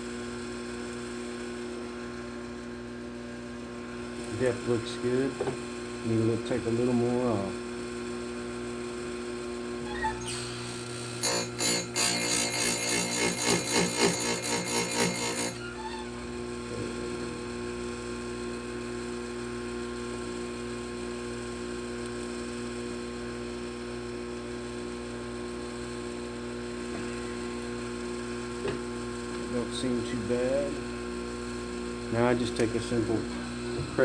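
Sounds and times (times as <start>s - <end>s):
steady electric hum: 0.0s - 34.0s
grinding stone on chainsaw chain: 11.2s - 15.6s.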